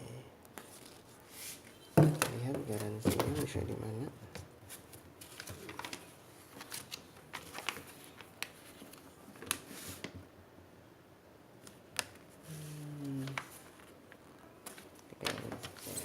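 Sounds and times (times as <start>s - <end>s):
paper and card rustling: 0.6s - 10.2s, 14.6s - 16.0s.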